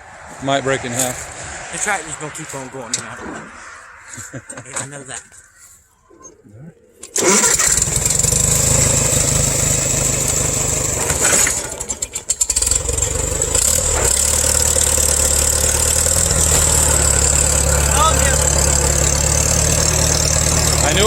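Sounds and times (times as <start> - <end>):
tractor engine under load: 7.0 - 21.0.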